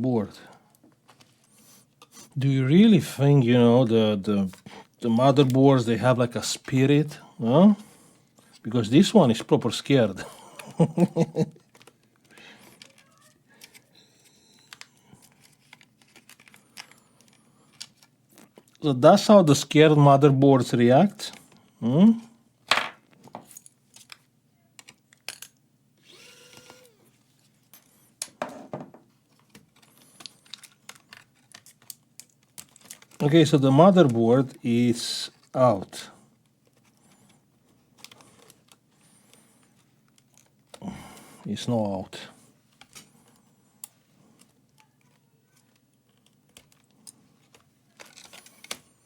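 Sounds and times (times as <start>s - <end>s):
laptop parts clicking and tapping: 24.8s - 25.6s.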